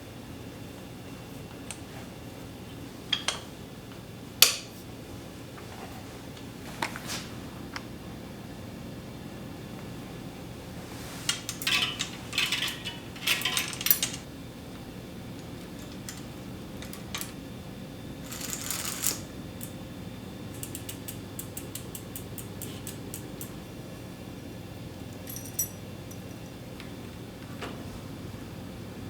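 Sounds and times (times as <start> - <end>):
metal bicycle parts clinking: 11.0 - 14.3, 15.4 - 17.4, 25.2 - 26.2.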